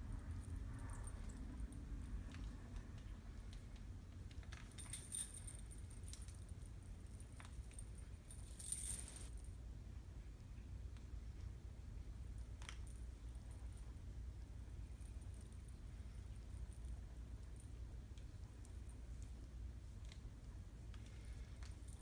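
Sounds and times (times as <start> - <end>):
jingling rattle: 4.7 - 9.4
short rustles: 8.3 - 9.4.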